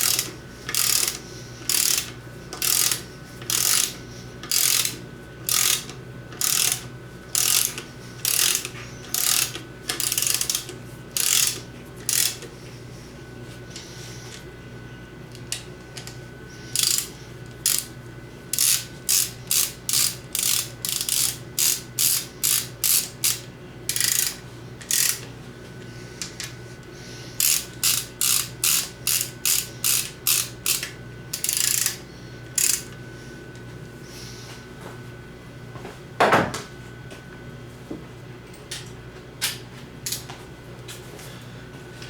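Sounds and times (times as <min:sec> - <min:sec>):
ratchet wrench clicking: 0:00.0 - 0:06.8, 0:07.4 - 0:12.4, 0:16.8 - 0:17.9, 0:18.6 - 0:25.2, 0:27.4 - 0:32.0, 0:32.6 - 0:33.0.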